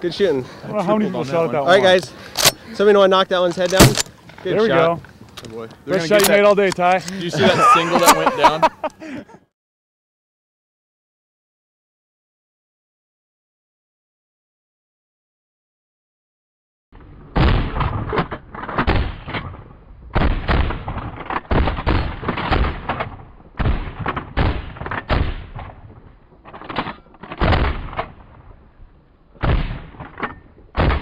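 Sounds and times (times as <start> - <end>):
shotgun shots with echo: 27.4 - 28.2, 29.4 - 30.0, 30.8 - 31.0.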